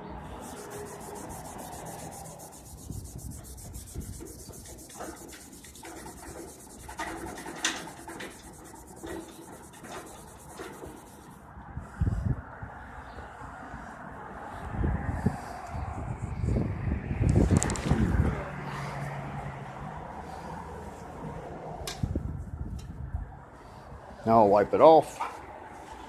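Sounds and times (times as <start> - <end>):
rag rubbing metal: 0.3 - 11.4.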